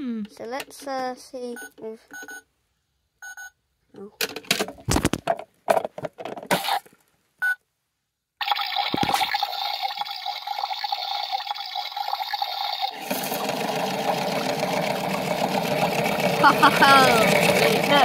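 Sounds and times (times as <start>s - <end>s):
water filling: 8.4s - 18.0s.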